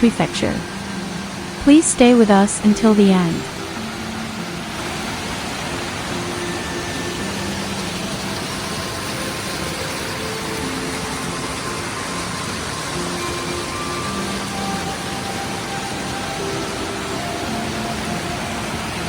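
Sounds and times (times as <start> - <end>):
faint held musical notes: 0.0 - 19.0
waterfall and mountain stream rushing: 0.0 - 19.0.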